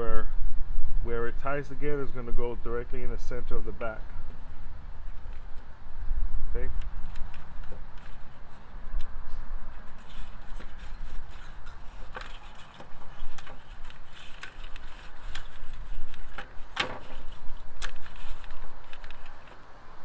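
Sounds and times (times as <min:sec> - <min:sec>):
low steady rumble: 0:00.0 - 0:20.0
plastic parts clicking and knocking: 0:11.4 - 0:19.6.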